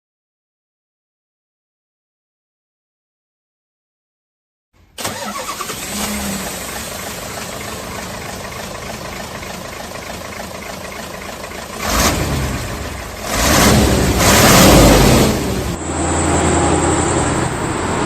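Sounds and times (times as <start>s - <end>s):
engine starting and idling: 5.0s - 15.8s.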